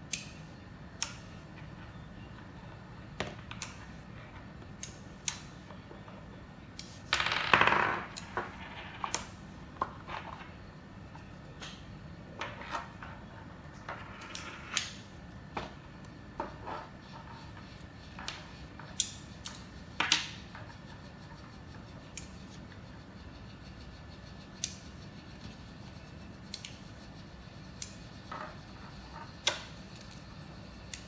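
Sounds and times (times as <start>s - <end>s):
magnets clicking together: 0.1s - 0.4s, 1.0s - 1.3s.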